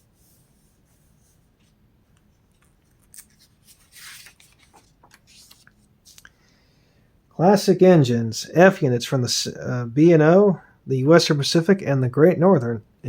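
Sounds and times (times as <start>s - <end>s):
paper page rustling: 0.0s - 1.8s, 2.4s - 6.3s.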